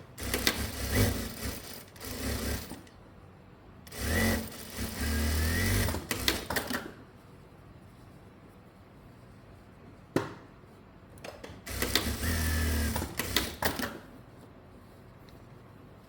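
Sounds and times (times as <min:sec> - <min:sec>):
electric sewing machine stitching: 0:00.2 - 0:02.9, 0:03.9 - 0:06.7, 0:11.7 - 0:13.9.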